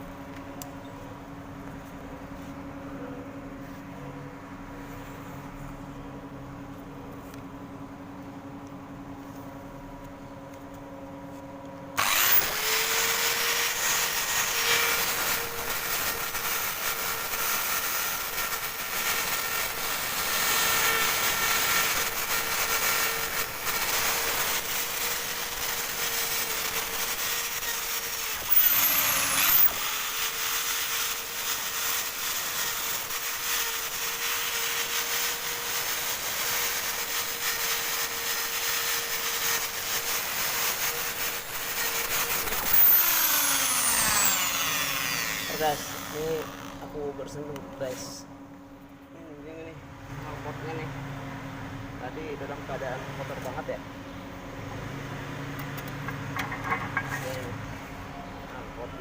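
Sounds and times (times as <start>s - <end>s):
drill with wire brush scraping metal: 12.0s - 47.1s.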